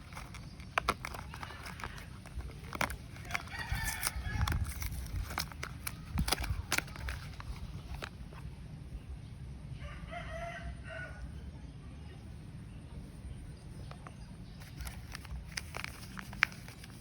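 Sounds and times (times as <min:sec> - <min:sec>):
soap packaging crinkling: 0:00.0 - 0:08.4, 0:14.0 - 0:17.0
rooster crowing: 0:09.8 - 0:11.2.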